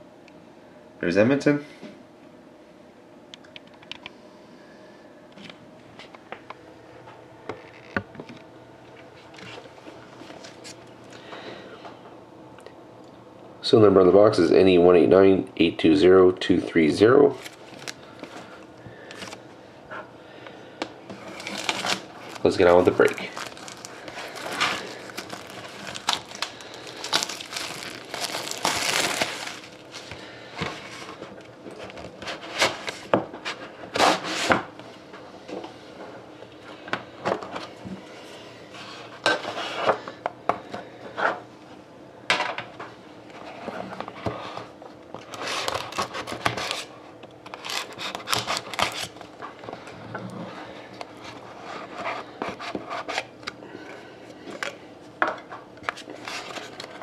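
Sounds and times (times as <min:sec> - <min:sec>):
cardboard and wrapping rustling: 0:17.3 - 0:19.4, 0:21.2 - 0:34.6, 0:45.2 - 0:46.9, 0:47.5 - 0:49.3, 0:55.9 - 0:57.0.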